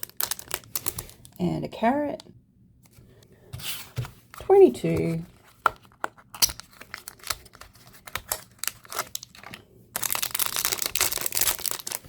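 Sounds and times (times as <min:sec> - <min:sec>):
plastic wrapper crinkling: 0:00.0 - 0:01.4, 0:05.3 - 0:12.0.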